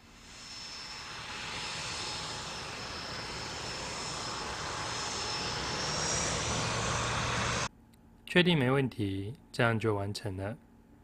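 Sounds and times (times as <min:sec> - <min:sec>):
aircraft engine noise: 0:00.0 - 0:07.7
high whine: 0:00.0 - 0:07.7.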